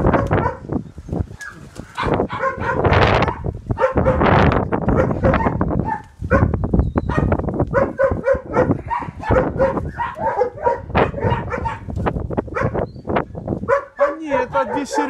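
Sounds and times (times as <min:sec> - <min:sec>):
dog barking and yapping: 0:00.0 - 0:00.8, 0:01.4 - 0:12.9, 0:13.6 - 0:15.0
wind rumble on microphone: 0:00.0 - 0:15.0.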